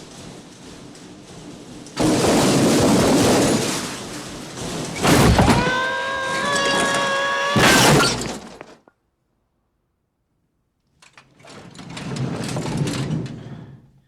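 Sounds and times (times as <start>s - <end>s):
tool chest crashing: 2.0s - 8.8s.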